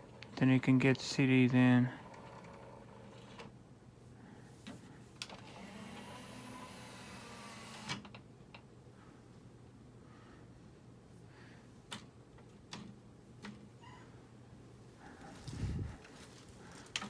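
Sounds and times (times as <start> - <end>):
small motor whirring: 5.4 - 8.0.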